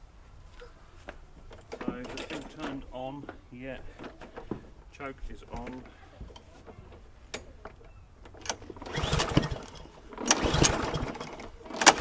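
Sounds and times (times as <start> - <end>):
lawnmower engine turning over: 1.4 - 4.8, 5.4 - 12.0
recoil starter pulls: 5.5 - 12.0.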